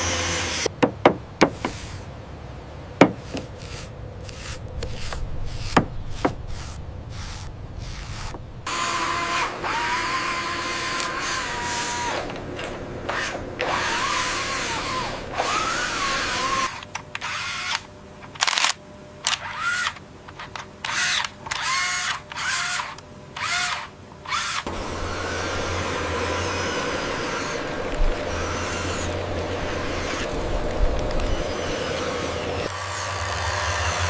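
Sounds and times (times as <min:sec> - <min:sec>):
small electric motor whirring: 0:00.0 - 0:00.7, 0:03.2 - 0:34.0
steady low hum: 0:22.9 - 0:34.0.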